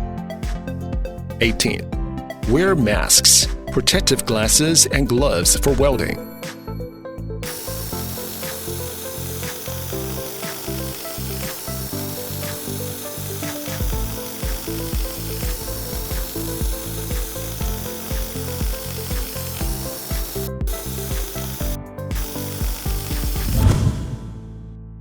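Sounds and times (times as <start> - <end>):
background music with beat: 0.0 - 24.5.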